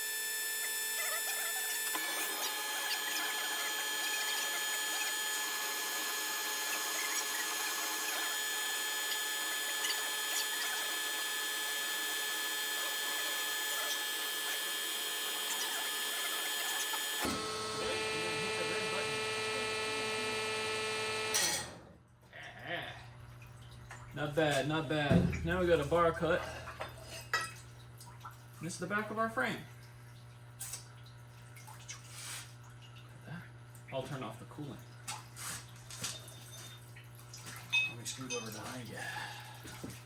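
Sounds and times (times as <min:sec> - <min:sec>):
bandsaw cutting steel: 0:00.0 - 0:21.8.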